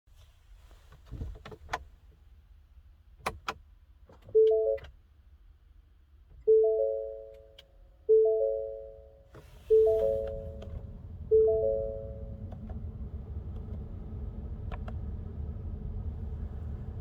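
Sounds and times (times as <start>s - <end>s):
three-note electronic warning chime: 6.5s - 7.5s, 8.1s - 10.6s, 11.3s - 12.3s.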